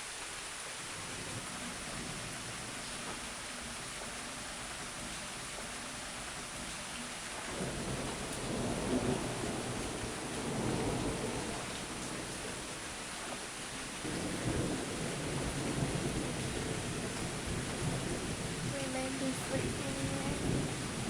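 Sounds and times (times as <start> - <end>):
heavy rain hissing: 0.0 - 21.0
rolling thunder: 7.5 - 13.1, 13.8 - 21.0.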